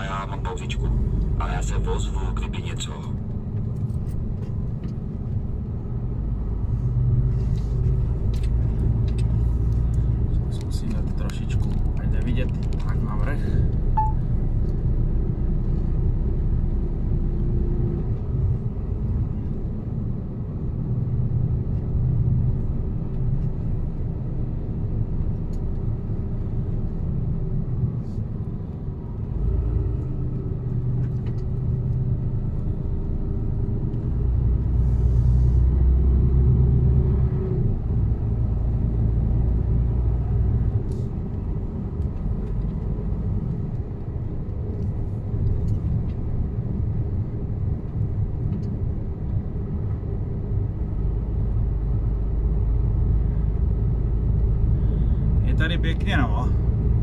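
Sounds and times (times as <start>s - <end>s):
deep engine rumble: 0.0s - 57.0s
truck diesel engine droning: 13.0s - 19.7s.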